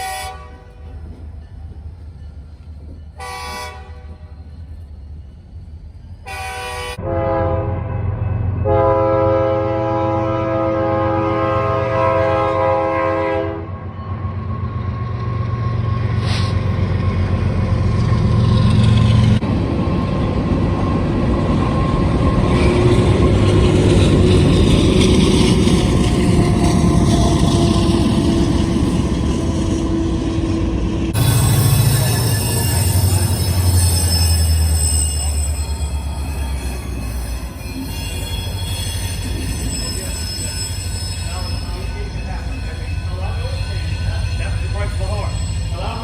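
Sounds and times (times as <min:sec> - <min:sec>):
locomotive horn blast: 0:00.0 - 0:00.9, 0:03.2 - 0:04.2, 0:06.3 - 0:13.9
train rumbling past: 0:00.0 - 0:46.0.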